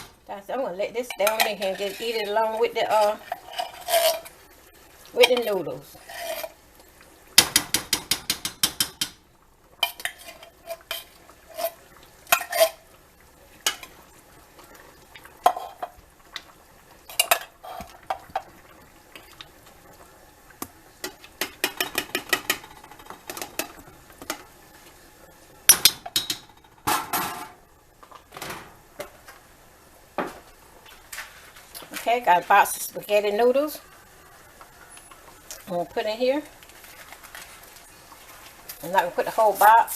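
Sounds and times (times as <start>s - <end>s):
spoon clinking against a pot: 1.0s - 2.4s.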